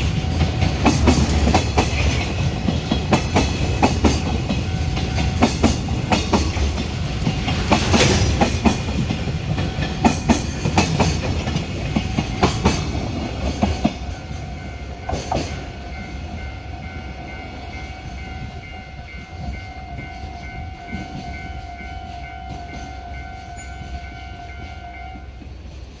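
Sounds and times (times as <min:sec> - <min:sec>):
wheels clacking over rail joints: 0:00.0 - 0:15.7
freight train wagons rolling: 0:00.0 - 0:16.6.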